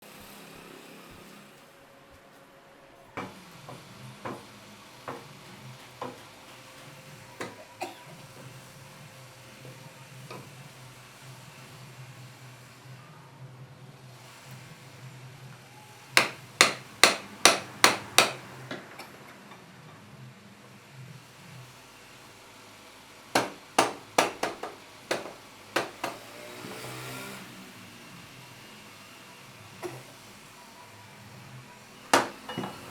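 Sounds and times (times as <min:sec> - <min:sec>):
sharp knocks: 0:23.4 - 0:26.2
hiss with shifting tones: 0:25.4 - 0:32.9.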